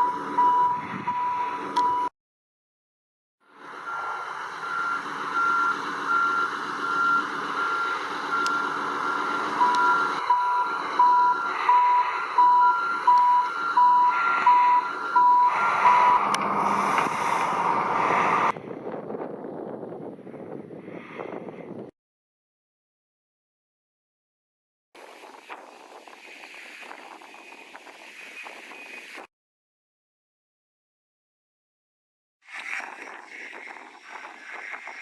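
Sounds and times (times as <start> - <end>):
high reversing alarm beeping: 0.0 - 2.1, 3.7 - 16.8
lower reversing alarm beeping: 0.0 - 2.1, 3.7 - 16.4
engine noise: 3.5 - 18.6.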